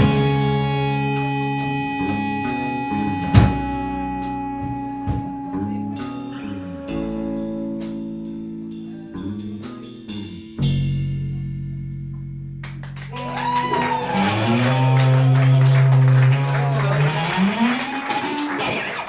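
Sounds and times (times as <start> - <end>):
drums: 0.0 - 11.5, 12.6 - 19.0
guitar and bass chords: 0.0 - 19.0.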